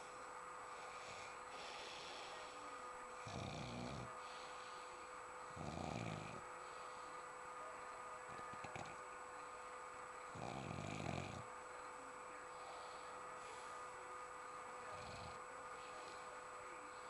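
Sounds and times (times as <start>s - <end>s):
quiet breathing: 0.0s - 17.0s
man snoring: 0.8s - 2.6s, 3.2s - 4.6s, 5.5s - 6.4s, 10.3s - 11.5s, 14.9s - 16.3s.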